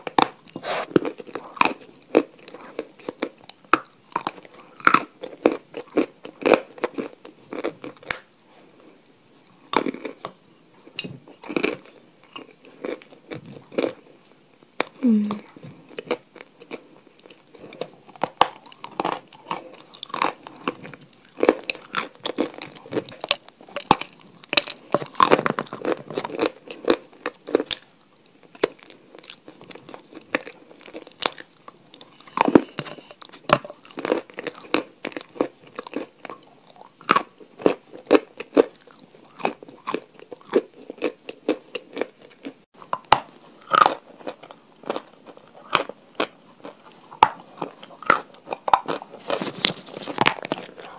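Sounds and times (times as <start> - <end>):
crunching and chewing crisp food: 0.0 - 50.9.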